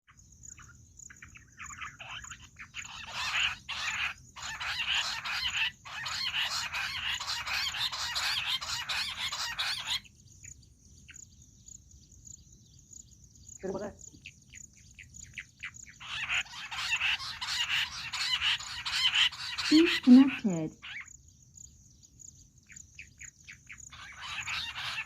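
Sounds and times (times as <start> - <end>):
quail chattering chirps: 0.1 - 11.3, 13.5 - 21.2, 22.6 - 25.0
short quail calls: 0.6 - 10.1, 15.0 - 21.1, 23.0 - 25.0.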